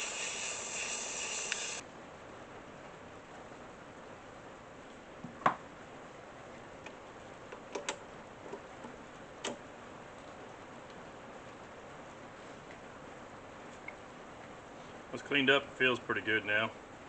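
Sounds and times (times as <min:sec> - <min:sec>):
faint steady hiss: 0:00.0 - 0:17.0.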